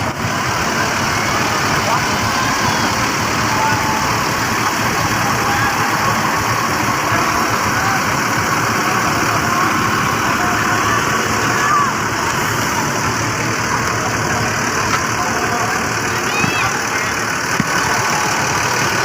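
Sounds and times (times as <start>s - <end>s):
bus engine idling: 0.0s - 19.0s
faint voices: 0.0s - 19.0s.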